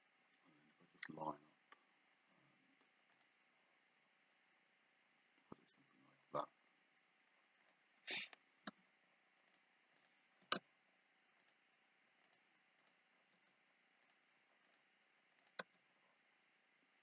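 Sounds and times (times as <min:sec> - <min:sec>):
computer mouse clicks: 0:02.8 - 0:03.4, 0:09.4 - 0:10.7, 0:11.4 - 0:11.6, 0:12.2 - 0:15.8.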